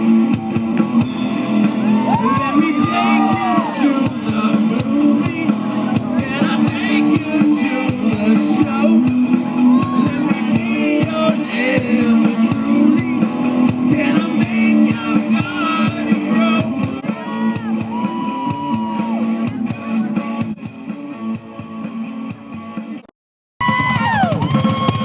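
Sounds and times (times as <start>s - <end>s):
rock music with guitar: 0.0s - 23.0s, 23.6s - 25.0s
person singing or shouting: 1.8s - 13.3s, 14.0s - 20.0s.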